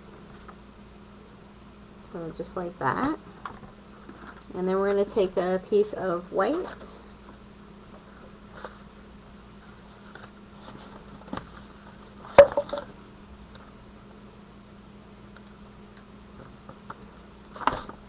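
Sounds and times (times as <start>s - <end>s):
small knocks: 12.4s - 12.9s
paper handling clicks: 16.4s - 18.0s.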